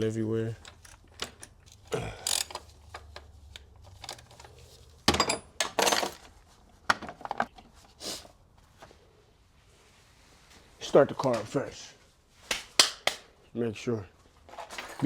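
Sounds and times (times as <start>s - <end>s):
metal tools clinking and clattering: 0.6s - 3.2s, 3.8s - 6.3s, 14.5s - 15.0s.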